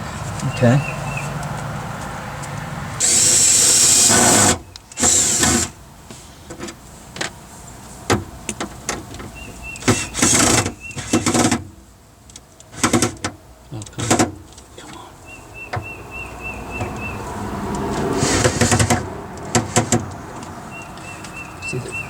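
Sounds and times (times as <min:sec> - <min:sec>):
power drill running: 0:03.0 - 0:05.7
sharp clicks and knocks: 0:08.1 - 0:15.0, 0:17.7 - 0:21.6.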